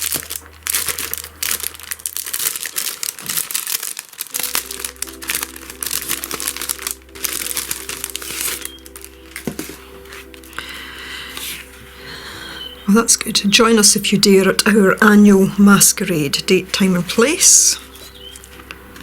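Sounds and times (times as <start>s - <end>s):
paper crinkling and rustling: 0.0s - 12.1s, 16.5s - 19.0s.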